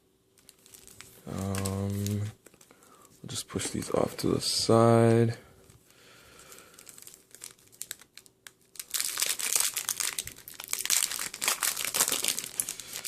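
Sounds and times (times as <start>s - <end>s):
foil wrapper crinkling and tearing: 0.4s - 3.0s, 6.4s - 13.0s.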